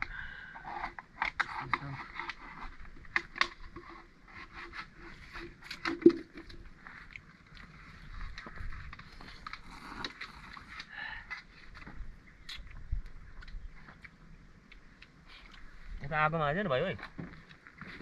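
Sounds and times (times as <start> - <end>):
knife scraping wood: 3.6 - 5.8.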